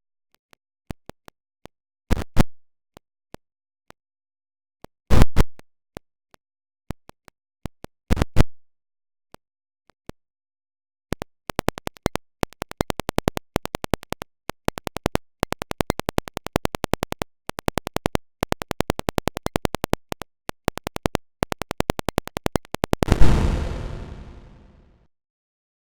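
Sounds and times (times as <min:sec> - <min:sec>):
sharp digital clicks: 0:23.0 - 0:24.8
deep boom: 0:23.1 - 0:24.8
short loud bursts: 0:23.1 - 0:24.8.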